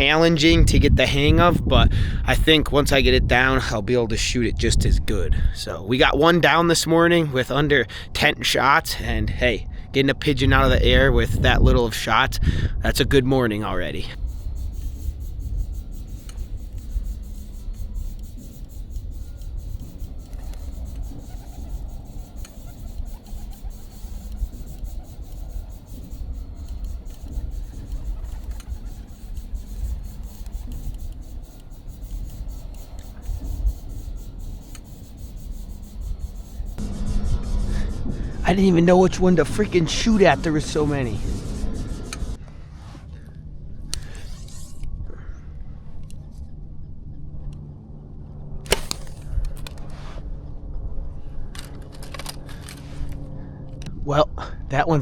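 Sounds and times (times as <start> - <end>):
wind buffeting microphone: 0.0 - 6.2, 9.2 - 42.4
bow shot snap: 48.7 - 49.5.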